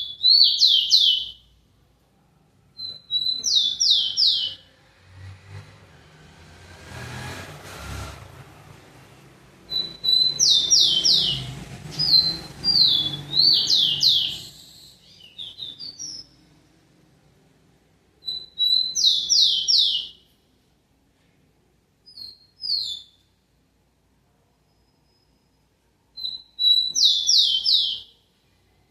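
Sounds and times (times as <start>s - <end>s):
sparrow singing whistled notes: 0.0s - 1.5s, 2.8s - 4.7s, 9.7s - 16.4s, 18.2s - 20.3s, 22.0s - 23.3s, 26.2s - 28.2s.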